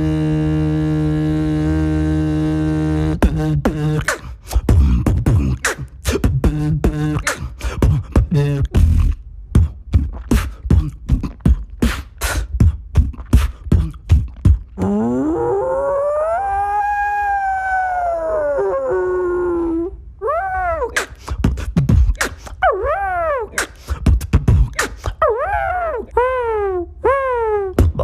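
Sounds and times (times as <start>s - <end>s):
hummed vocal drone: 0.0s - 11.6s, 14.8s - 22.0s
beatboxed kick and snare hits: 3.2s - 14.8s, 21.0s - 22.6s, 23.6s - 25.2s, 27.8s - 28.0s.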